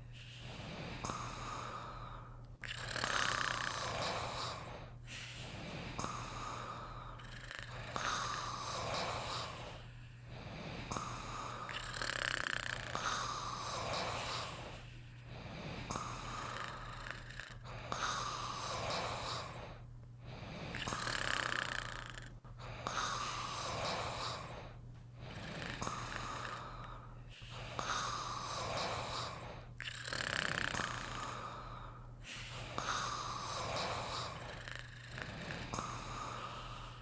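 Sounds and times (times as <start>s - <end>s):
snoring: 0.4s - 37.0s.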